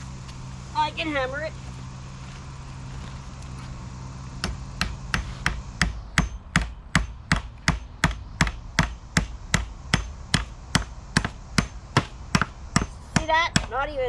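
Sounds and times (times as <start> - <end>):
hammer striking anchor: 4.4 - 13.8.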